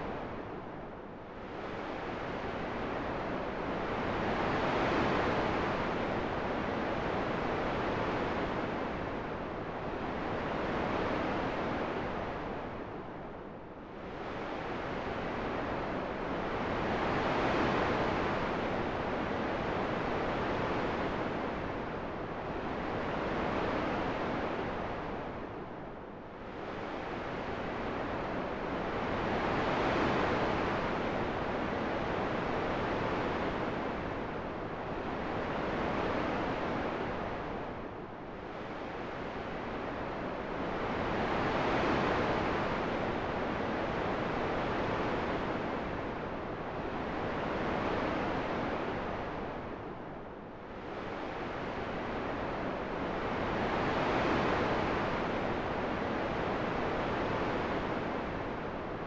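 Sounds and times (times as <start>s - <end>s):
rushing wind: 25.9s - 40.2s.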